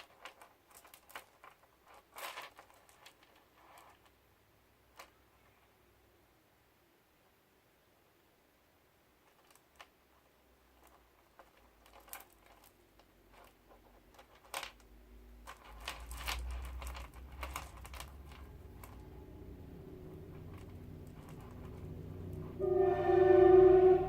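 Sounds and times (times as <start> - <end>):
beads clicking together: 0.0 - 4.1, 10.7 - 22.6
low rumble: 16.2 - 24.0.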